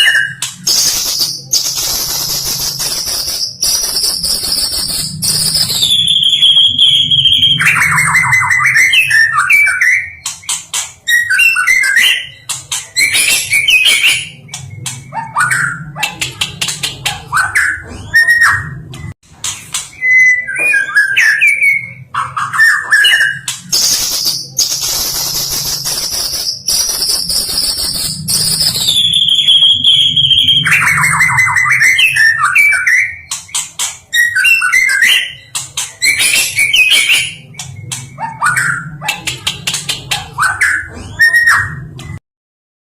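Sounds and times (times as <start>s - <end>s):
bird singing whistles and trills: 0.0s - 16.1s, 19.9s - 39.1s.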